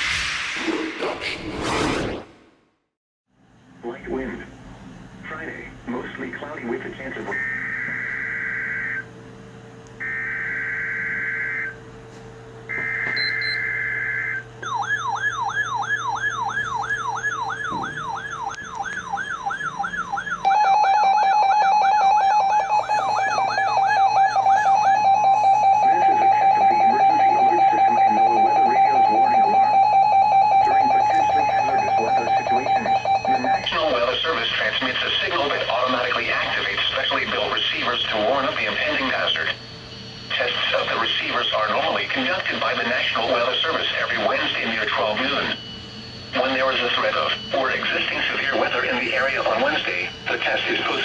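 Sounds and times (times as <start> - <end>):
loud steady attention tone: 7.3 - 9.2, 10.0 - 11.8, 12.7 - 51.0
warbling electronic alert tone: 12.8 - 33.9.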